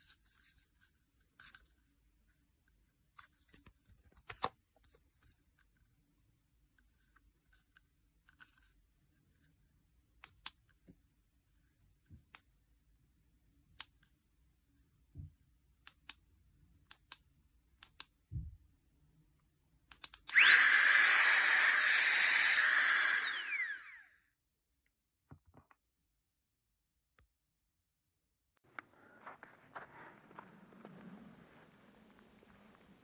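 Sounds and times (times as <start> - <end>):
electric air pump whining: 20.3 - 24.1.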